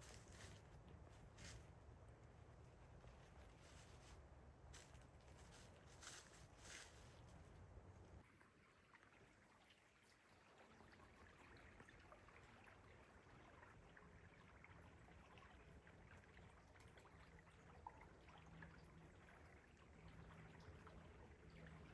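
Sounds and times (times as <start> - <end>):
water trickling and dripping: 8.2 - 21.9.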